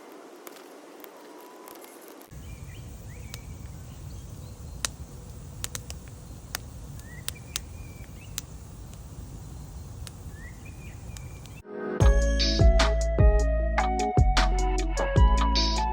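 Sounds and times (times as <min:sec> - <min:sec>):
campfire crackling and popping: 0:00.0 - 0:11.6
birds chirping: 0:01.9 - 0:08.6, 0:09.6 - 0:11.6.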